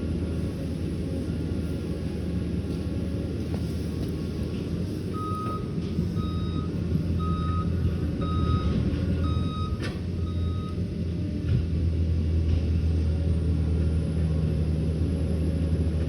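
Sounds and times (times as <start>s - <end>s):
diesel engine rumbling: 0.0s - 16.0s
reversing alarm beeps: 5.1s - 10.9s.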